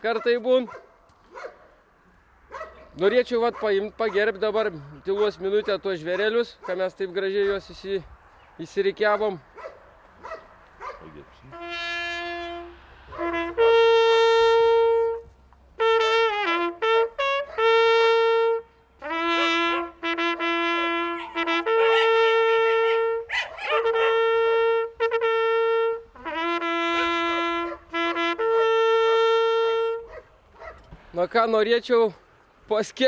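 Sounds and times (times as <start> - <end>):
hunting horn call: 11.3 - 30.2.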